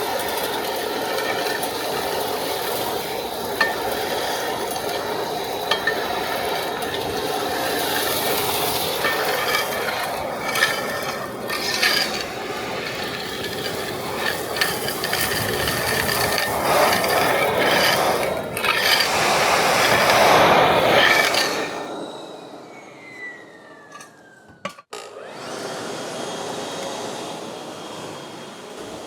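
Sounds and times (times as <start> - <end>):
metal chips clattering through hose: 0.0 - 21.8
industrial vacuum running: 0.0 - 29.0.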